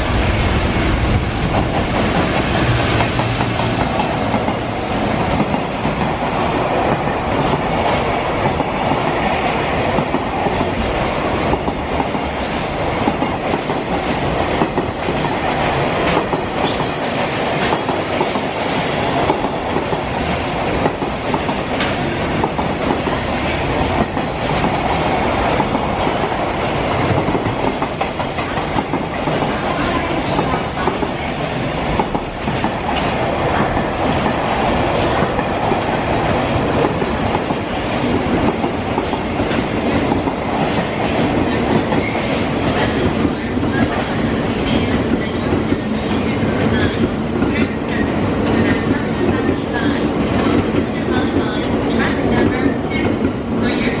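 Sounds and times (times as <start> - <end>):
freight train rumbling past: 0.0 - 54.0.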